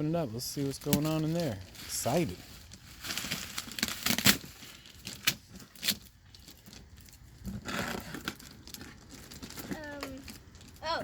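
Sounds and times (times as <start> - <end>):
wrapping paper crackling and rustling: 0.4 - 11.0.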